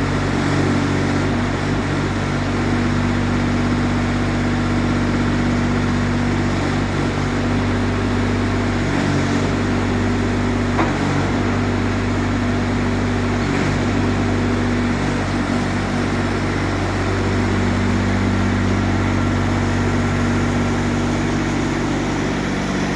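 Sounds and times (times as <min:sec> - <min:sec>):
mini excavator engine running: 0:00.0 - 0:22.9.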